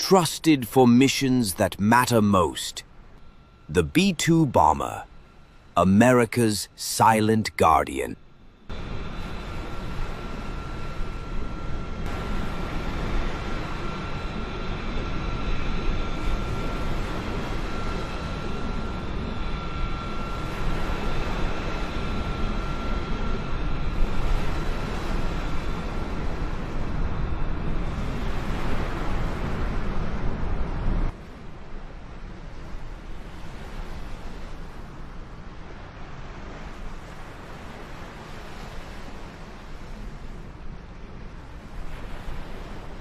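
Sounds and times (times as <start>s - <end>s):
high engine whine: 0.0s - 31.2s
jet engines running: 0.0s - 43.0s.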